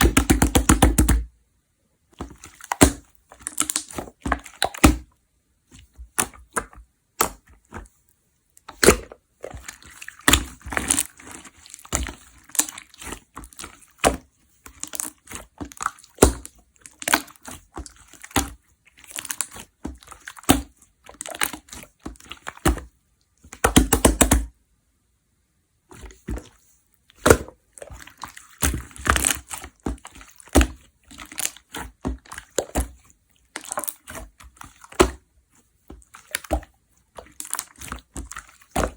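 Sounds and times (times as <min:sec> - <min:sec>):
wet slime squishes: 0:00.0 - 0:01.3, 0:02.0 - 0:24.5, 0:25.9 - 0:38.9
slime crackling and popping: 0:02.2 - 0:05.1, 0:08.7 - 0:22.9, 0:27.1 - 0:35.2, 0:36.0 - 0:38.9.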